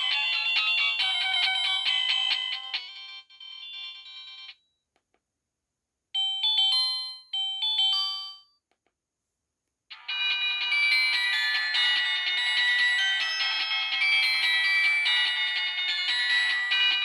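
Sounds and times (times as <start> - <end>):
phone ringtone melody: 0.0 - 4.6, 9.9 - 17.0.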